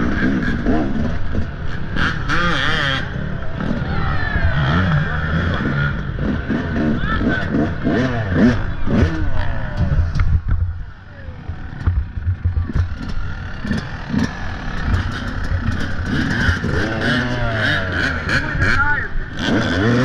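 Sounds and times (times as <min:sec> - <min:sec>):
dirt bike engine revving: 0:00.0 - 0:20.0
rattling and clatter: 0:11.4 - 0:18.1.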